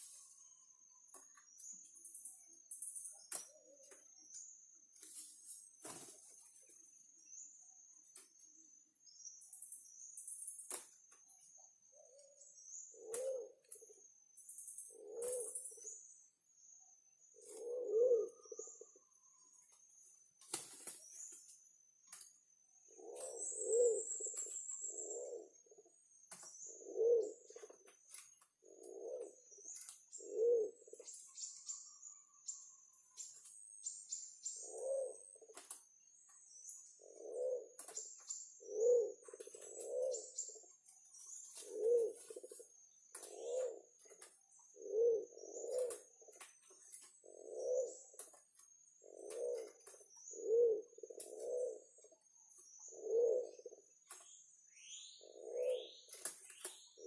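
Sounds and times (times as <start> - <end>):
faint high chirping: 0.0 - 57.0
pigeon cooing: 12.0 - 14.0, 14.9 - 15.7, 17.4 - 19.1, 22.9 - 25.9, 26.7 - 27.8, 28.6 - 31.1, 34.6 - 35.6, 37.0 - 37.9, 38.6 - 40.6, 41.5 - 46.5, 47.2 - 48.4, 49.0 - 52.2, 52.9 - 53.9, 54.8 - 57.0.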